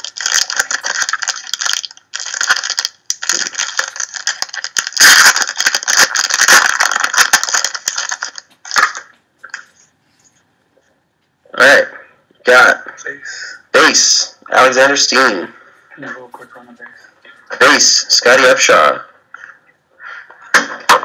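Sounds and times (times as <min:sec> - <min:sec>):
wrappers torn and crinkled: 0:00.0 - 0:09.6.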